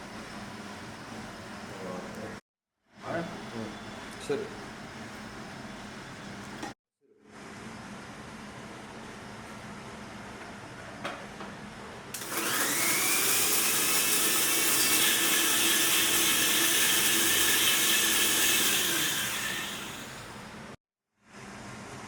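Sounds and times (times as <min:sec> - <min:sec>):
mixer grinder motor whining: 0:12.1 - 0:20.8.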